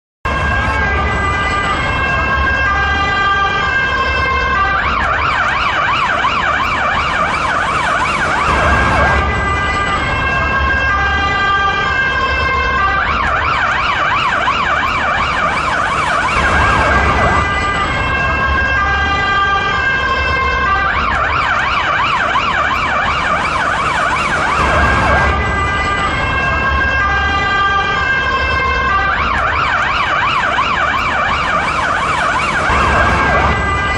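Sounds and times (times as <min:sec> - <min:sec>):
police car siren: 0:00.3 - 0:33.9.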